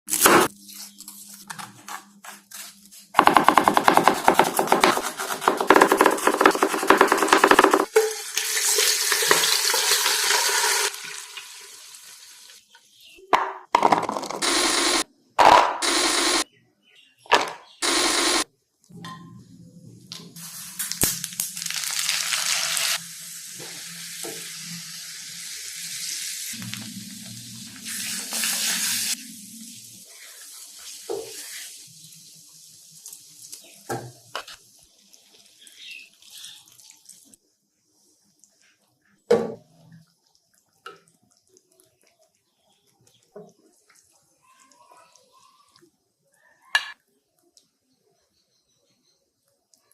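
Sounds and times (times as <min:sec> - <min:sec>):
chicken sizzling in a pan: 0:08.0 - 0:12.7, 0:20.4 - 0:37.4.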